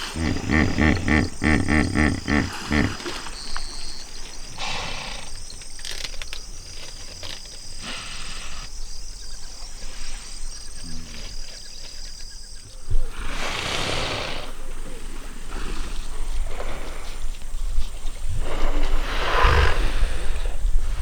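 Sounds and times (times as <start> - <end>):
hippos grunting: 0.0 - 6.0
insect chirring: 0.0 - 12.8.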